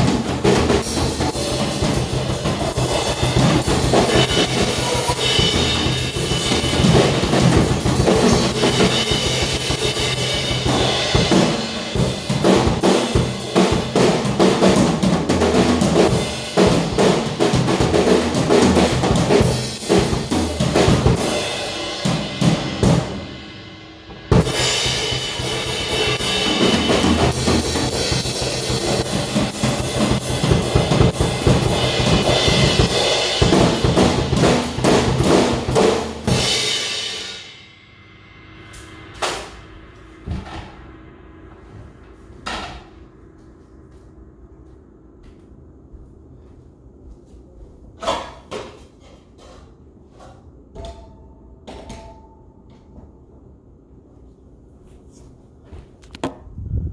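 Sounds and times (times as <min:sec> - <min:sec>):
drum kit playing: 0:00.0 - 0:37.6, 0:38.5 - 0:42.7.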